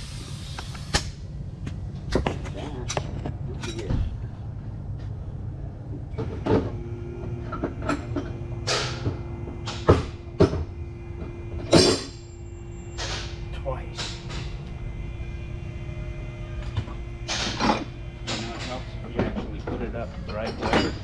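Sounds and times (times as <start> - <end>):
low background hum: 0.0 - 21.0
hand tools clanking: 17.3 - 21.0.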